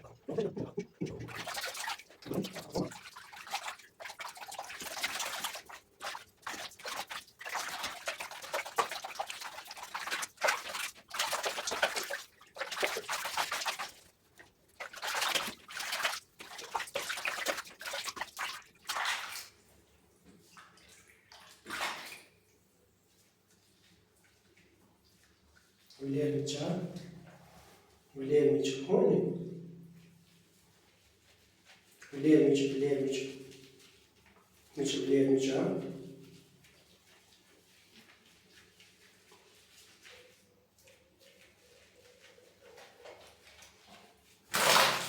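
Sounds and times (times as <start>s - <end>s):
water running and splashing: 0.0s - 19.6s, 30.4s - 45.0s.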